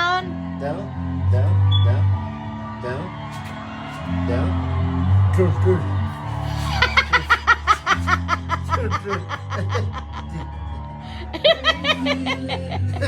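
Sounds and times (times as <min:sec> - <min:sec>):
background music with bass: 0:00.0 - 0:13.0
rapid laughing sounds: 0:05.8 - 0:13.0.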